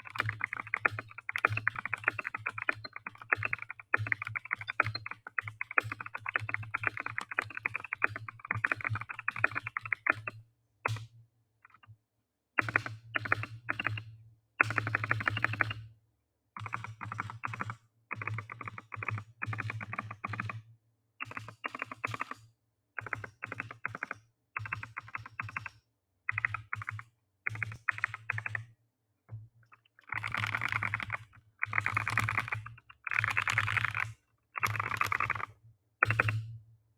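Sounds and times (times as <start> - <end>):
mechanical keyboard typing: 0.0 - 10.3, 12.6 - 14.0, 14.6 - 15.7, 21.2 - 22.4, 23.0 - 25.7, 26.3 - 28.6, 29.7 - 36.4.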